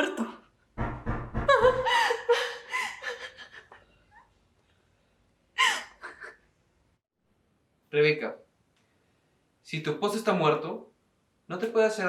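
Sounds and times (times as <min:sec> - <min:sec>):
woman sobbing: 0:01.5 - 0:03.9, 0:05.6 - 0:06.4.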